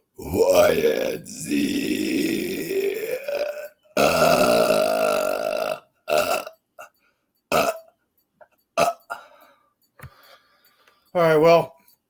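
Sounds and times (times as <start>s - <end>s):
man belching: 0.2s - 6.9s, 7.5s - 7.9s, 8.8s - 9.2s.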